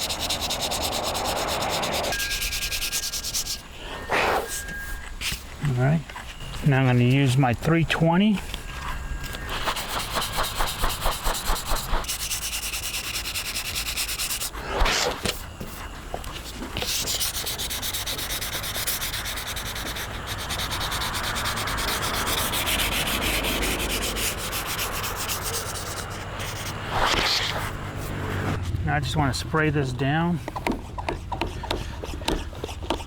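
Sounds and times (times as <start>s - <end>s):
sandpaper scratching: 0.0s - 5.4s, 9.2s - 15.8s, 16.8s - 28.1s, 30.8s - 33.0s.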